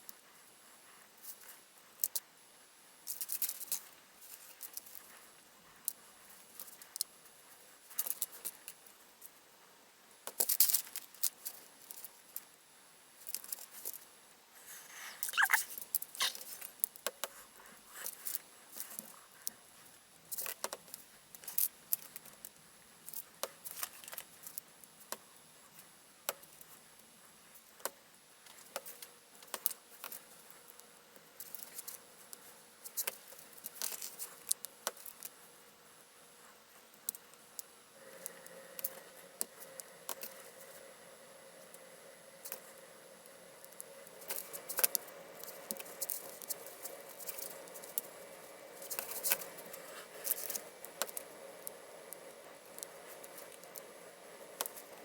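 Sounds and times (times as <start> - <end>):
brief squeak: 15.0 - 16.4.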